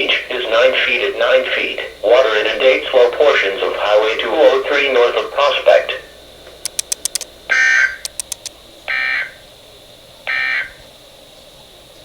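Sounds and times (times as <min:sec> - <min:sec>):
sharp clicks: 0:06.6 - 0:07.3, 0:08.0 - 0:08.5.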